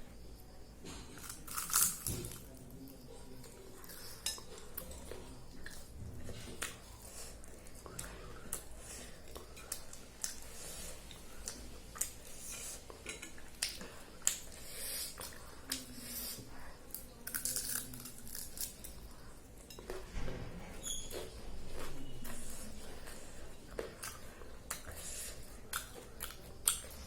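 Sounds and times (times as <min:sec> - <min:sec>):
cutlery and dishes clinking: 0:03.9 - 0:05.2.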